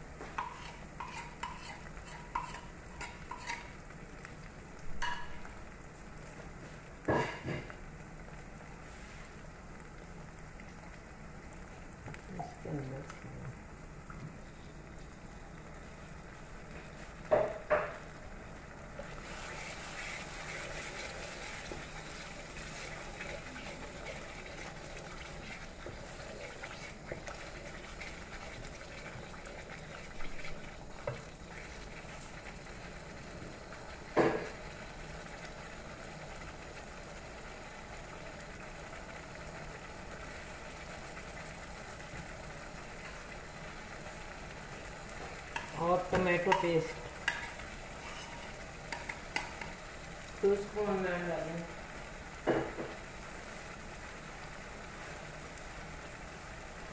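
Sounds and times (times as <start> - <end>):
paste sizzling in oil: 0.1 - 4.0, 18.9 - 56.9
spoon knocking against pan: 5.0 - 5.4, 45.6 - 47.5.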